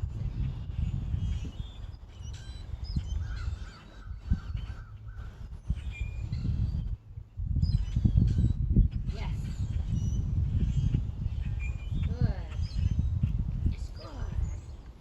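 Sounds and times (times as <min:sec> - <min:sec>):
steady low rumble: 0:00.0 - 0:01.3
birds chirping: 0:00.2 - 0:15.0.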